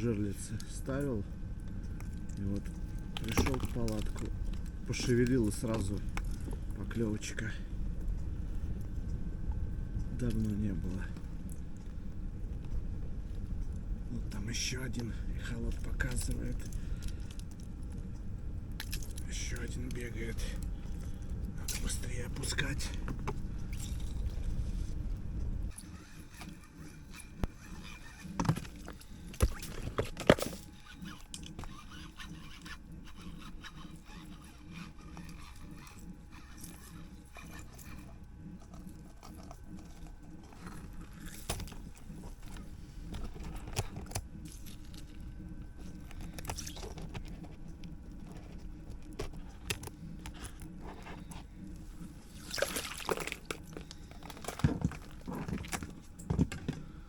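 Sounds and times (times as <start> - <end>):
water sloshing: 2.0 - 6.7, 51.8 - 57.0.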